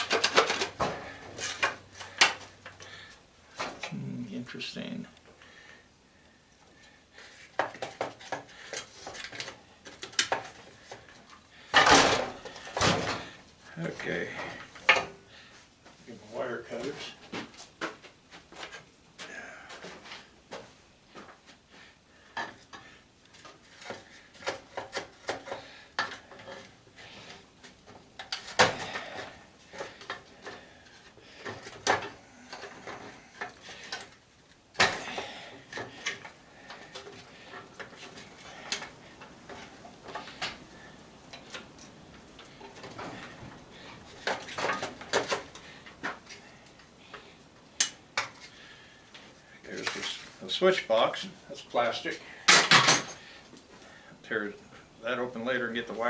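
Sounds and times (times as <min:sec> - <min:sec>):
hand tools clicking and clinking: 0:00.0 - 0:02.9.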